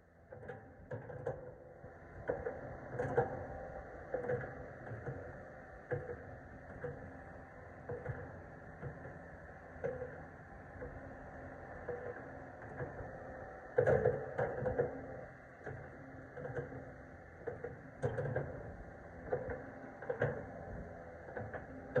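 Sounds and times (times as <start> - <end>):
excavator engine hum: 1.4 - 22.0.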